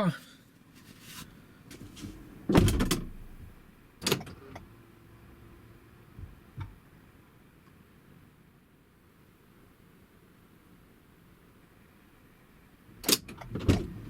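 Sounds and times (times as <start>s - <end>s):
car door shutting: 1.7s - 3.6s, 13.4s - 14.0s.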